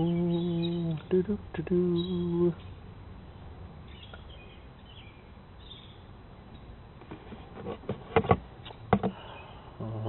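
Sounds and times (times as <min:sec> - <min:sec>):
low background noise: 0:00.0 - 0:10.0
faint bird chirps: 0:03.9 - 0:06.7.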